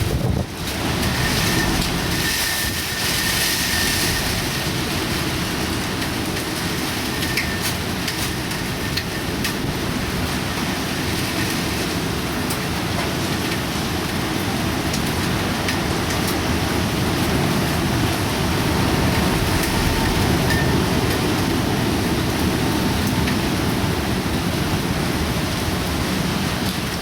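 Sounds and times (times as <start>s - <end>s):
deep wind noise: 0.0s - 10.7s, 16.5s - 26.7s
heavy rain: 0.0s - 27.0s.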